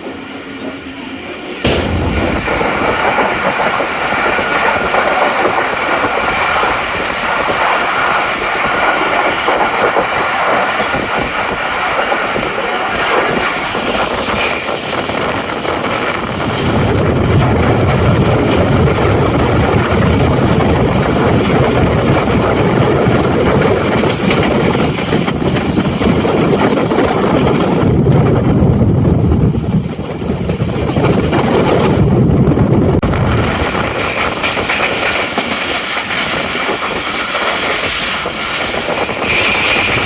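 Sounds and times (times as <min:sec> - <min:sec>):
train wheels rumbling on rails: 0:00.0 - 0:40.0
rushing air: 0:01.6 - 0:24.7, 0:32.9 - 0:40.0.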